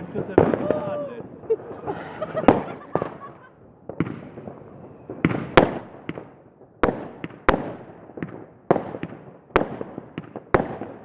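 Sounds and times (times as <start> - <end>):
fireworks bangs echoing: 0.0 - 11.0.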